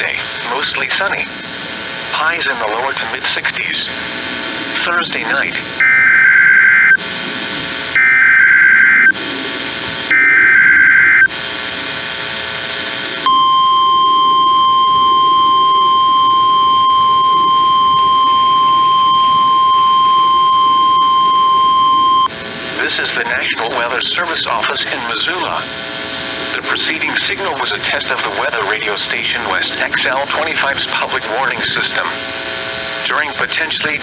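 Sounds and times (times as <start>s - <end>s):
faint radio hiss: 0.0s - 5.8s, 20.2s - 34.0s
steady alarm tone: 4.4s - 11.9s, 13.2s - 33.0s
digital data bursts: 4.8s - 7.0s, 8.0s - 9.2s, 10.1s - 11.3s, 13.3s - 32.2s.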